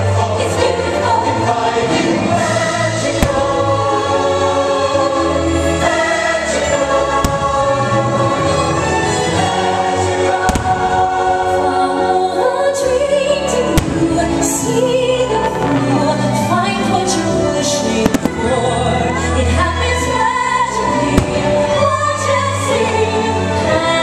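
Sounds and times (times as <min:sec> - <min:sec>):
choir singing: 0:00.0 - 0:24.0
orchestral music: 0:00.0 - 0:24.0
firework bangs: 0:03.0 - 0:04.2, 0:07.1 - 0:08.6, 0:10.3 - 0:11.6, 0:13.8 - 0:14.5, 0:18.0 - 0:18.6, 0:21.1 - 0:21.9.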